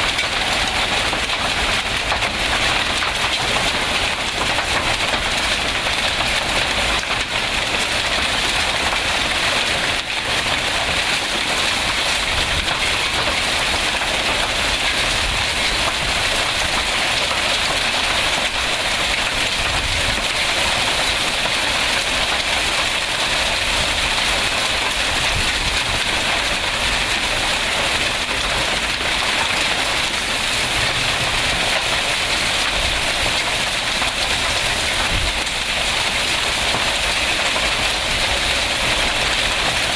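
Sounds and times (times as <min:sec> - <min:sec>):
heavy rain and hail pelting: 0:00.0 - 0:39.9.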